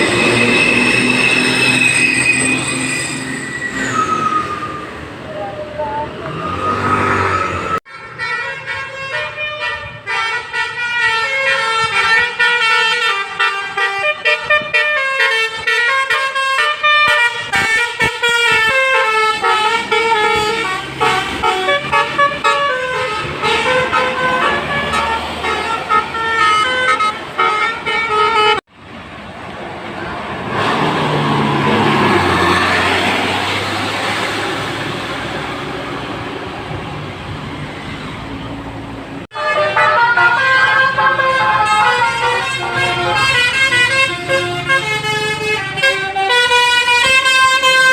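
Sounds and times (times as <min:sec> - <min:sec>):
bus horn playing a melody: 0:07.8 - 0:28.6, 0:39.3 - 0:47.9.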